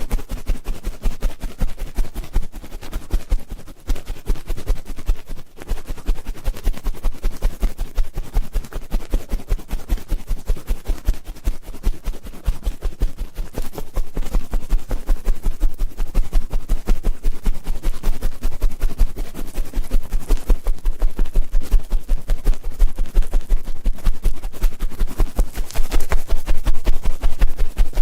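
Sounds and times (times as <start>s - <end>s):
ear-cleaning tool scratching: 24.9s - 27.0s.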